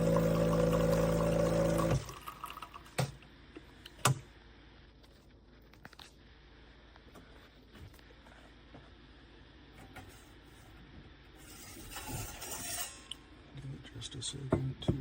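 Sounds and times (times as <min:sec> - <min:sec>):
electric appliance humming: 0:00.0 - 0:03.2.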